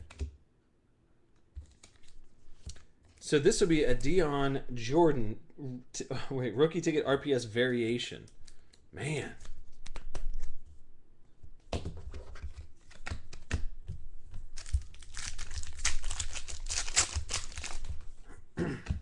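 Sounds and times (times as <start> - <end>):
wrapper crinkling: 14.5 - 18.2
foil wrapper tearing: 14.6 - 18.0.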